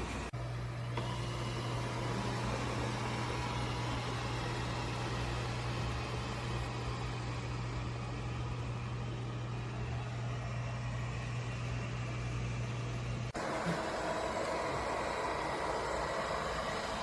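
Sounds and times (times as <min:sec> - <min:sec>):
fan hiss: 0:00.0 - 0:17.0
robot vacuum motor hum: 0:13.3 - 0:17.0.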